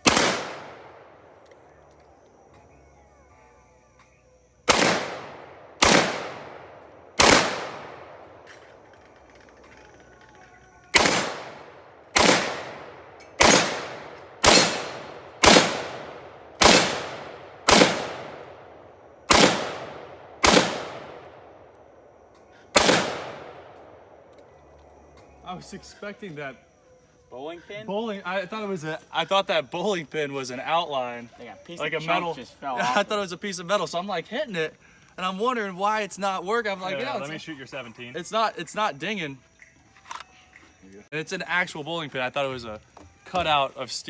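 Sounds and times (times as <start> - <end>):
rifle shots with echo: 0.0 - 1.4, 4.7 - 8.5, 11.0 - 21.7, 22.7 - 24.2.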